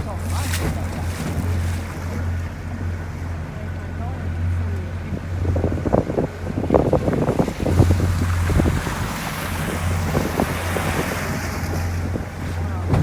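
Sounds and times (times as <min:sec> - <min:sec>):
low engine hum: 0:00.0 - 0:13.0
wind buffeting microphone: 0:05.1 - 0:13.0.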